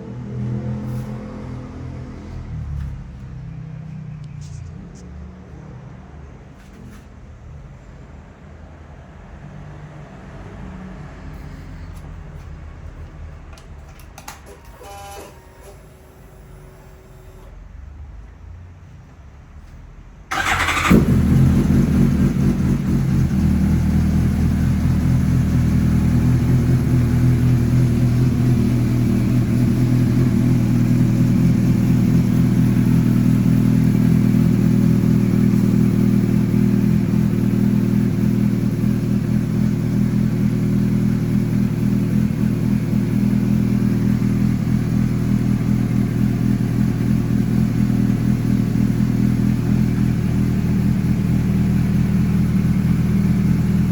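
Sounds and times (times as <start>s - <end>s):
motorcycle engine idling: 20.3s - 53.9s.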